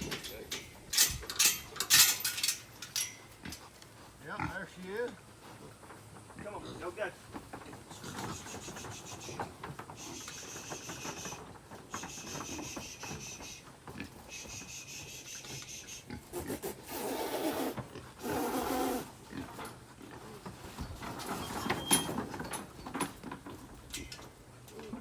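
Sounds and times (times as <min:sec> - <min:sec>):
pig squealing: 0:14.2 - 0:19.1.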